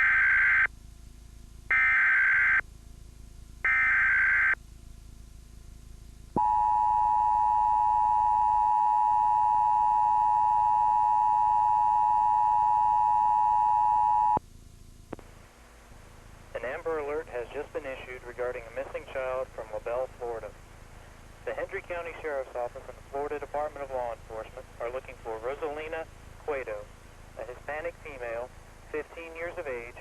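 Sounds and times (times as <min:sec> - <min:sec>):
two-tone attention signal: 0:06.4 - 0:14.4.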